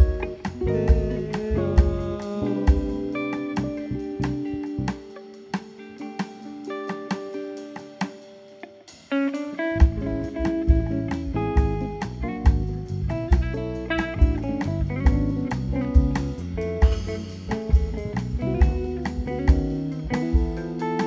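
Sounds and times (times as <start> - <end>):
bass: 0.0 - 5.2, 9.7 - 21.0
drum kit beat: 0.0 - 21.0
plucked guitar: 0.0 - 21.0.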